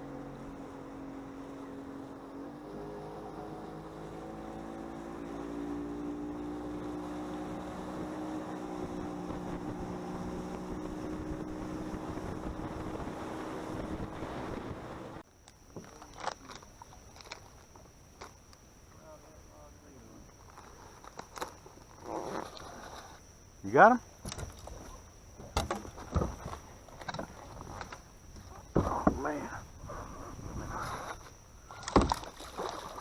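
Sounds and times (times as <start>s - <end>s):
outboard motor running: 0.0s - 15.9s.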